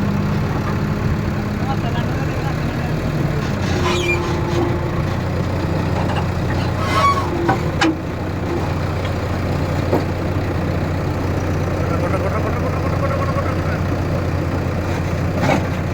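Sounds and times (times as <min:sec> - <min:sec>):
excavator engine running: 0:00.0 - 0:15.9
metal knocks and clanks: 0:03.4 - 0:08.0.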